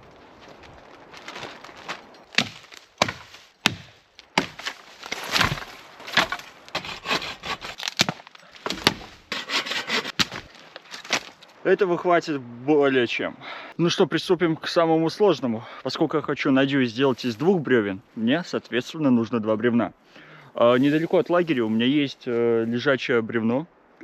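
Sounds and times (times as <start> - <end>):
branches cracking and snapping: 0.0 - 11.6
wood scraping on wood: 1.3 - 11.4.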